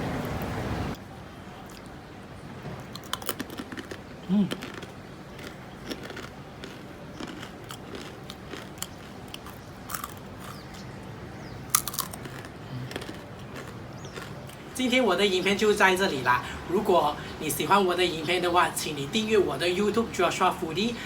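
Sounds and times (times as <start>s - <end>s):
crunchy snack chewing: 2.8s - 10.8s, 11.7s - 14.6s.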